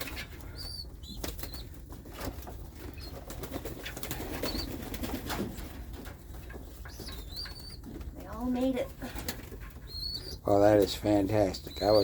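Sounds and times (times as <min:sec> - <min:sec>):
doves flapping wings: 0:01.1 - 0:08.3.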